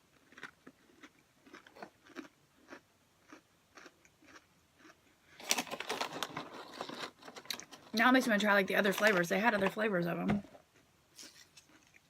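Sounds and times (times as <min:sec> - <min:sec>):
chewing crisp pretzel crackers: 0:00.0 - 0:07.9, 0:10.8 - 0:12.0.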